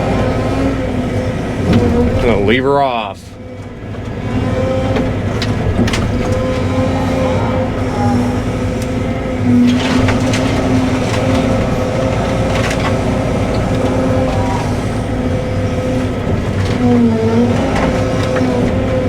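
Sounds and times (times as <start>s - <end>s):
excavator diesel engine running: 0.0s - 19.0s
wood cracking and breaking: 1.6s - 3.0s.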